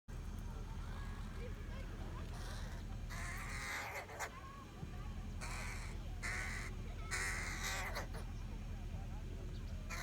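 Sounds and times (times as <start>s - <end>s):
crow cawing: 2.4s - 4.3s, 5.4s - 8.2s.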